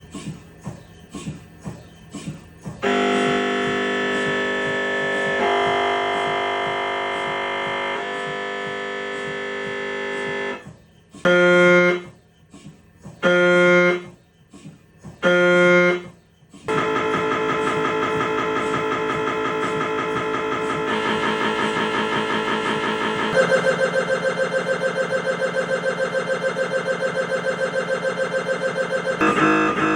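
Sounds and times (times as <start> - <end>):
mri scanner buzzing: 2.8 - 10.6, 16.7 - 29.9.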